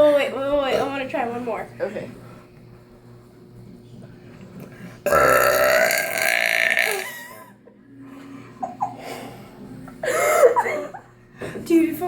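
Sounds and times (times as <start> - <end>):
person burping: 5.1 - 7.4.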